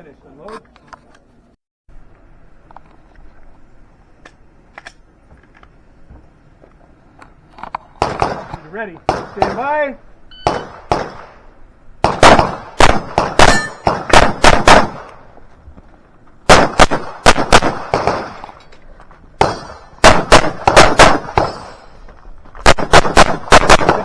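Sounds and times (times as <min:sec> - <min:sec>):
rapid pistol fire: 0:08.0 - 0:08.5, 0:09.1 - 0:09.7, 0:10.4 - 0:11.4, 0:12.0 - 0:15.1, 0:16.5 - 0:18.5, 0:19.4 - 0:21.8, 0:22.6 - 0:24.0.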